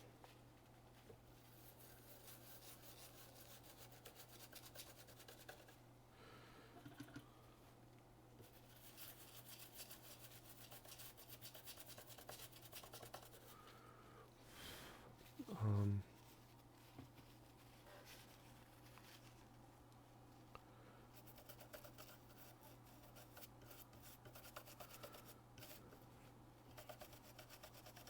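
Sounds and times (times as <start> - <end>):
low electrical hum: 0.0 - 28.0
brush scrubbing circuit board: 1.5 - 5.8, 8.4 - 13.5, 21.2 - 25.8, 26.7 - 28.0.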